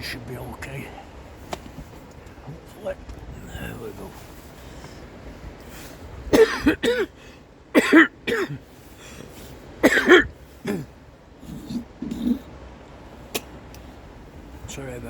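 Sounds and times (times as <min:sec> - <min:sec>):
man coughing: 0:06.3 - 0:08.6, 0:09.8 - 0:10.9.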